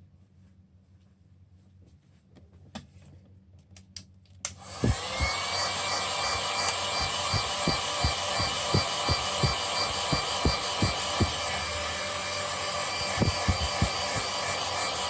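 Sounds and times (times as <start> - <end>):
electric blower motor running: 4.6 - 15.0
dull handling thumps: 4.8 - 5.4, 6.9 - 11.6, 13.1 - 14.3
faint clicks and taps: 7.0 - 11.4, 13.2 - 14.2.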